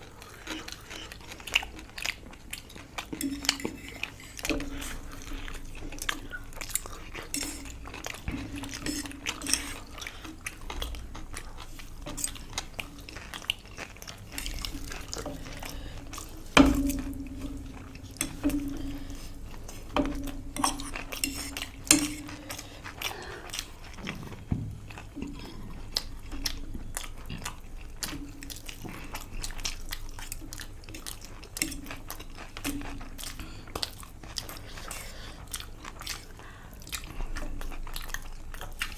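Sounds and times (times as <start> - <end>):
chewing and biting food: 0.0 - 38.9
cutlery clinking on plates: 16.6 - 22.5.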